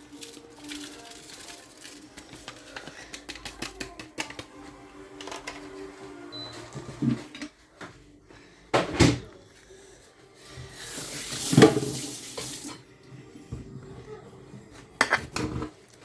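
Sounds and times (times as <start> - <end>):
tap water running into sink: 10.8 - 12.8.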